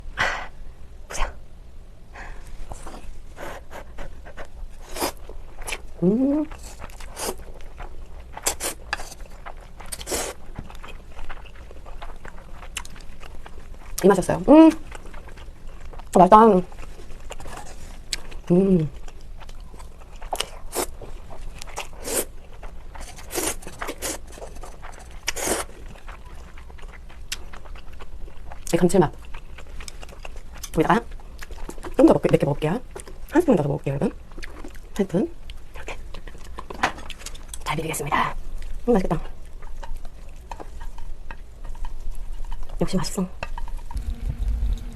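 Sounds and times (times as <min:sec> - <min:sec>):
noodles slurped and chewed: 0:06.5 - 0:14.0, 0:16.7 - 0:30.7, 0:43.4 - 0:44.9.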